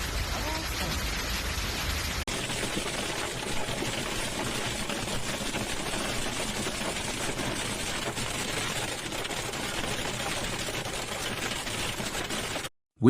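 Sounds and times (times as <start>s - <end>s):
hailstones clattering: 2.3s - 12.7s.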